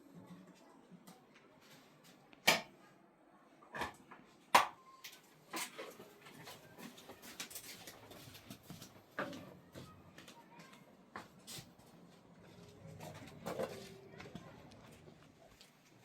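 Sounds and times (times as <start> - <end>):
small clicks and rustles: 5.1 - 9.5.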